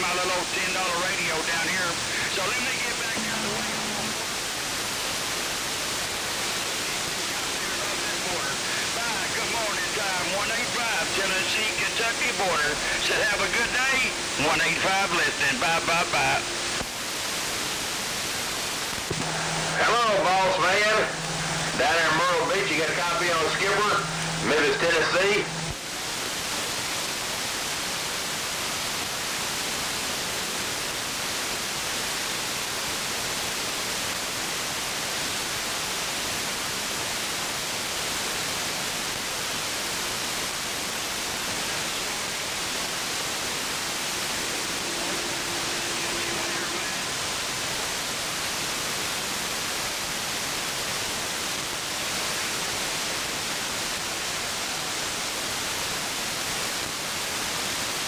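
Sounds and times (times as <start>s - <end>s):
radio static hiss: 0.0s - 58.0s
faint short tone: 3.2s - 4.3s, 44.0s - 47.7s.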